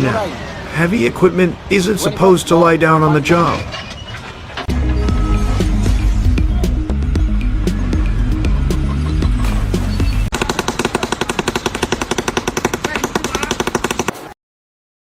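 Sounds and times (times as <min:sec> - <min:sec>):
background music: 0:04.7 - 0:10.3
rapid sharp impacts: 0:09.4 - 0:14.4.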